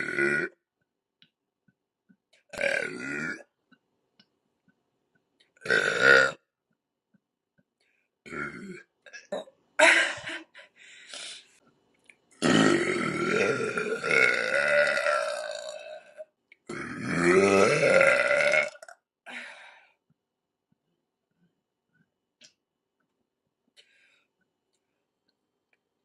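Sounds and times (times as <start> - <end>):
woman burping: 0.0 - 0.6, 2.5 - 3.5, 5.6 - 6.4, 8.2 - 10.5, 12.4 - 19.4.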